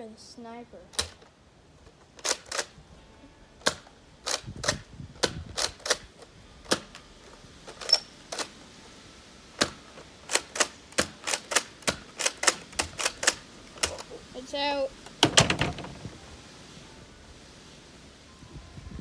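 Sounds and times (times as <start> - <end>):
toy dart blaster plastic clacks: 0.9 - 1.4, 2.2 - 2.8, 9.6 - 14.1.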